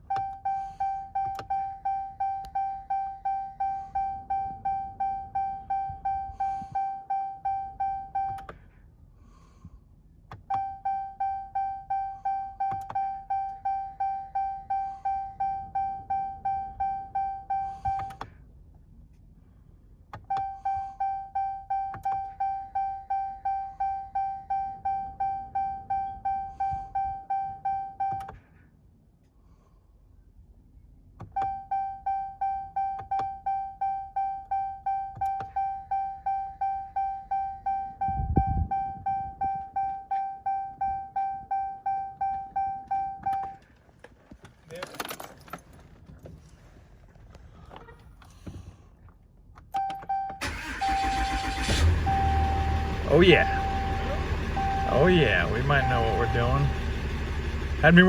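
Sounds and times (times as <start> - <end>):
dashboard warning chime dinging: 0.0 - 8.5, 10.5 - 18.2, 20.2 - 28.3, 31.3 - 43.6, 49.7 - 58.0.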